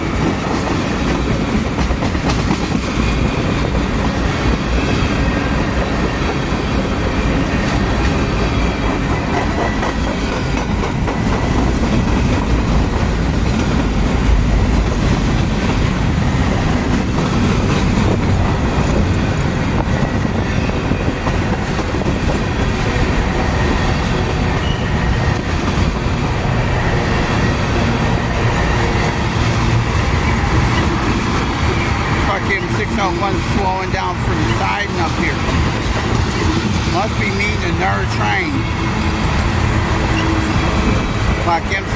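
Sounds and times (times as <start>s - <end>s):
train wheels clattering over rails: 0.0s - 41.9s
train wheels squealing: 23.5s - 25.6s, 39.0s - 41.2s.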